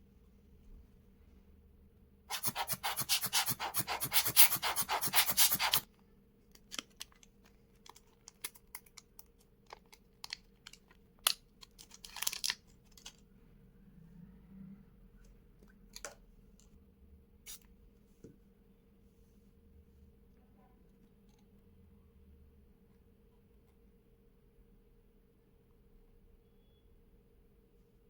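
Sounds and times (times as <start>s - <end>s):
scratching and rubbing: 2.3s - 5.8s.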